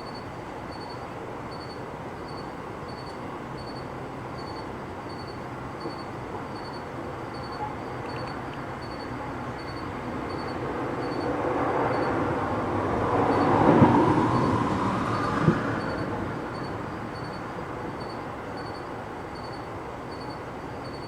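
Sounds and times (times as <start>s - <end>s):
passing vehicle rumble: 9.9s - 17.9s.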